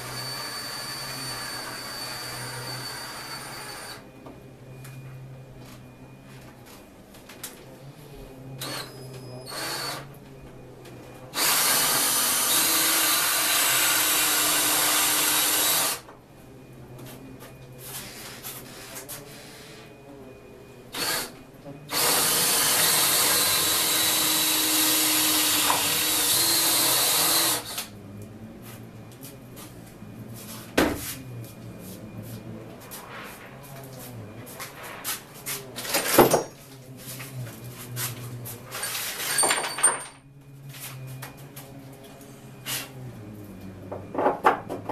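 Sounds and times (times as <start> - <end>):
power drill boring through plywood: 0.0 - 4.0, 8.6 - 10.0, 11.4 - 16.0, 20.9 - 21.3, 21.9 - 27.9.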